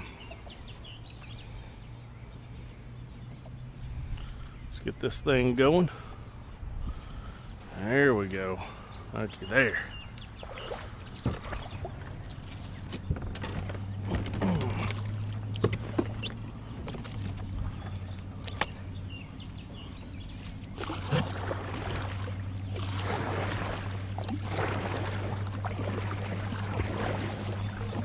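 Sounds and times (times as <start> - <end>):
low steady hum: 0.0 - 28.0
kayak paddle splashing in water: 10.2 - 18.9, 19.8 - 28.0.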